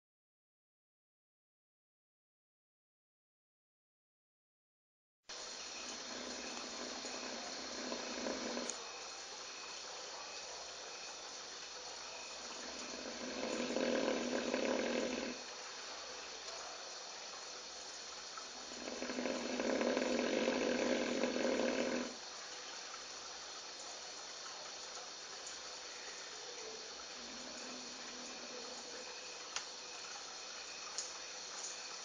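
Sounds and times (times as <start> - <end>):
lion snoring: 5.9 - 8.8, 12.4 - 15.5, 18.5 - 22.2, 27.2 - 29.2.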